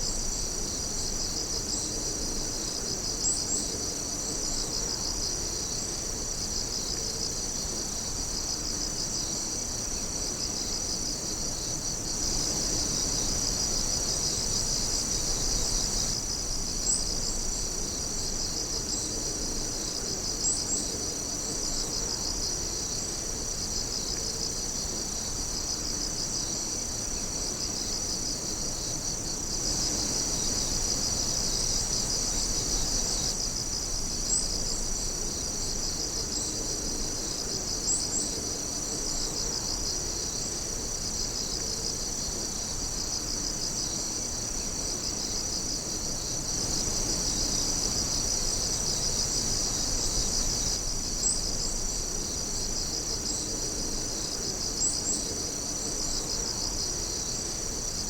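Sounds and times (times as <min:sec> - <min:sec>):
night insects trilling: 0:00.0 - 0:58.0
sharp insect chirps: 0:28.8 - 0:35.2.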